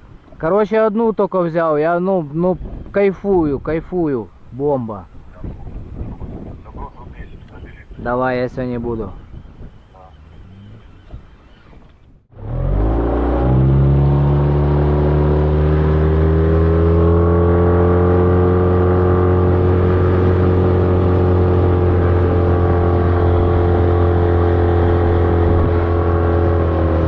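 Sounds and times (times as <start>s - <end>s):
outboard motor running: 9.2s - 27.0s.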